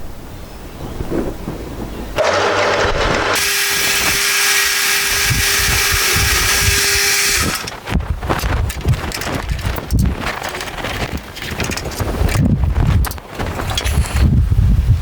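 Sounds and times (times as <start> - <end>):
drill drilling into steel: 2.2 - 7.8.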